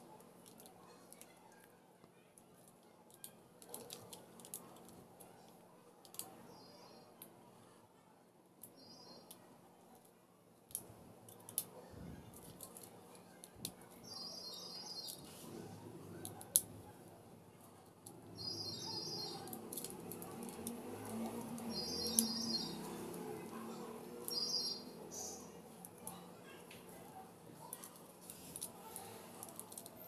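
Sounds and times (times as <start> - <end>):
small bird chirping: 13.9 - 15.4, 18.2 - 26.2.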